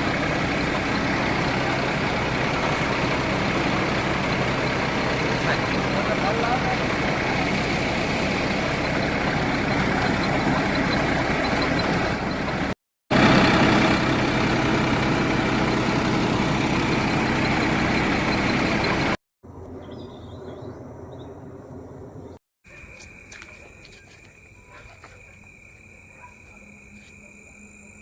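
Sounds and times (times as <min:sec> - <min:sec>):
loud mechanical drone: 0:00.0 - 0:22.4.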